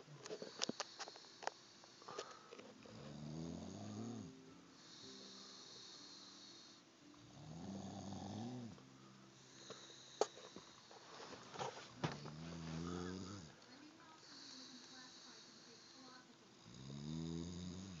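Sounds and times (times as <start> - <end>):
person snoring: 2.9 - 8.8, 12.2 - 13.6, 14.2 - 18.0.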